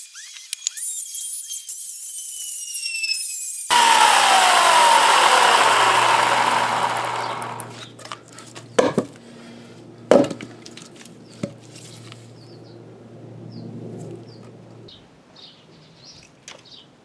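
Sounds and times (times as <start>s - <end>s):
wood scraping: 3.7s - 7.8s.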